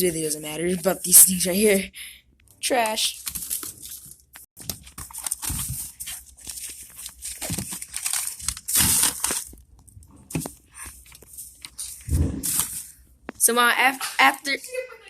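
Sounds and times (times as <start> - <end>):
paper and plastic crinkling: 2.7 - 13.0.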